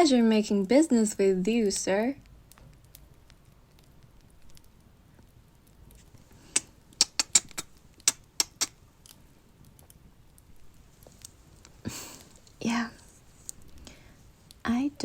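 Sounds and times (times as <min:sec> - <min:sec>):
wet kisses: 0:06.4 - 0:08.8.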